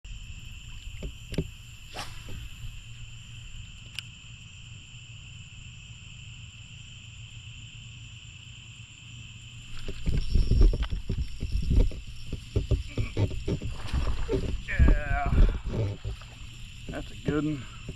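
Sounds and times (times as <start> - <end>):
night insects chirping: 0.0 - 17.9
fish splashing and rustling: 9.7 - 17.5
knocks and bumps: 9.7 - 17.9.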